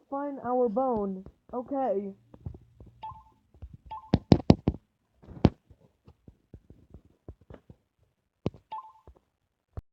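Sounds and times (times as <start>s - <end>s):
sharp clicks and knocks: 2.3s - 7.8s.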